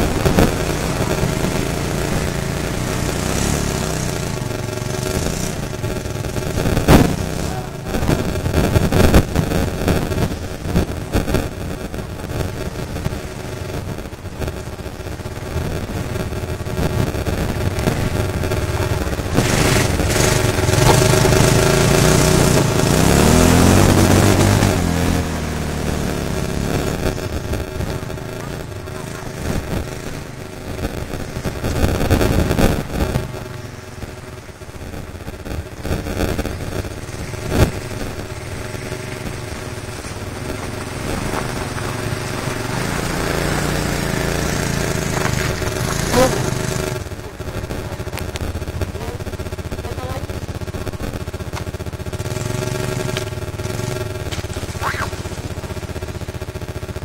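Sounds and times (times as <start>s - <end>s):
atv engine revving: 0.0s - 57.0s
sharp thump: 6.9s - 7.4s.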